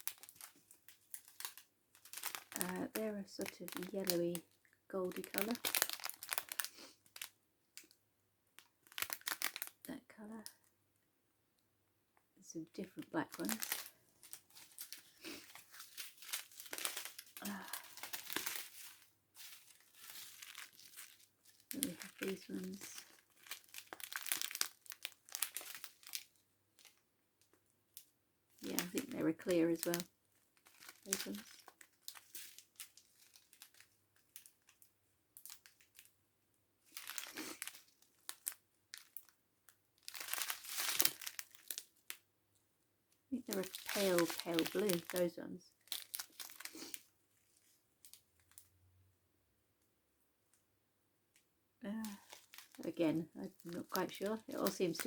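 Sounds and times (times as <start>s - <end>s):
plastic bags rustling: 0.0s - 7.3s, 8.8s - 9.9s, 12.8s - 27.0s, 28.6s - 34.8s, 35.4s - 36.1s, 36.9s - 39.3s, 40.0s - 42.2s, 43.4s - 48.6s, 51.8s - 55.0s
plastic bags crinkling: 0.0s - 8.0s, 8.6s - 9.9s, 12.6s - 27.6s, 28.5s - 36.1s, 36.8s - 39.3s, 39.9s - 42.2s, 43.4s - 48.7s, 51.8s - 55.0s.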